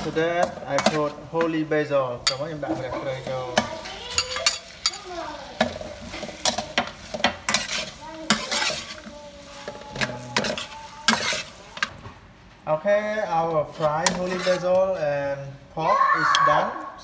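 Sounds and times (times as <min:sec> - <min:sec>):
meat sizzling in hot oil: 0:00.0 - 0:11.9.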